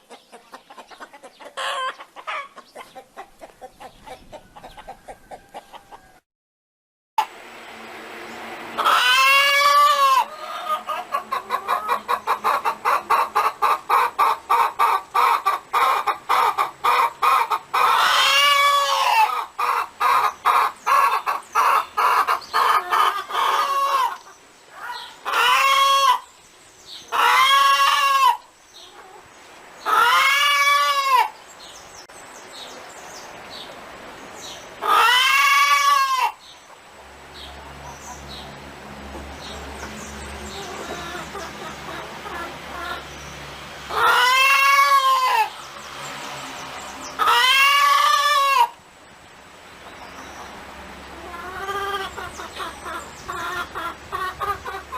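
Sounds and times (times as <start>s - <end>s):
hen clucking: 0.0s - 6.2s, 8.7s - 26.3s, 27.0s - 31.4s, 34.8s - 36.8s, 37.4s - 43.2s, 43.8s - 45.9s, 47.0s - 48.8s, 49.8s - 54.9s
hen squawking: 47.2s - 48.8s.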